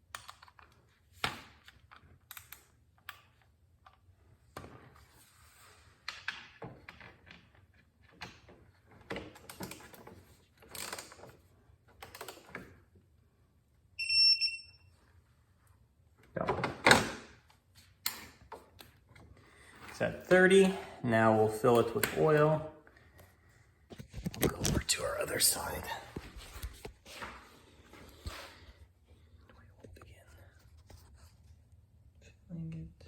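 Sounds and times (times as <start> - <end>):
short electronic beep: 14.0 - 14.9.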